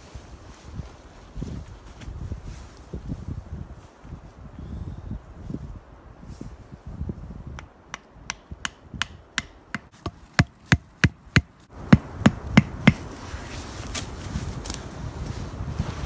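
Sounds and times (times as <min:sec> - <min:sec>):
hand tool striking: 0:07.9 - 0:13.1.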